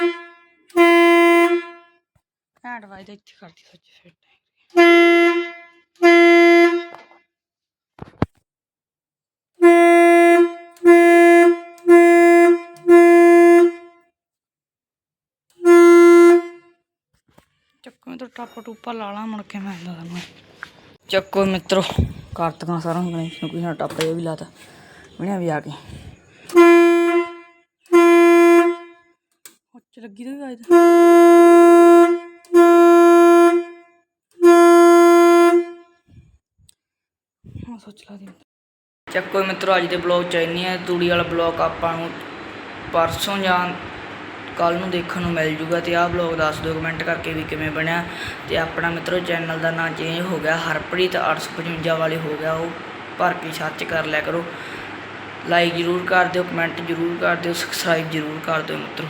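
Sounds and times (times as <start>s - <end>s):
truck horn blasts: 0.0s - 2.1s, 4.8s - 7.1s, 9.6s - 14.0s, 15.6s - 16.8s, 26.5s - 29.1s, 30.6s - 35.9s, 39.1s - 53.5s, 54.1s - 59.0s.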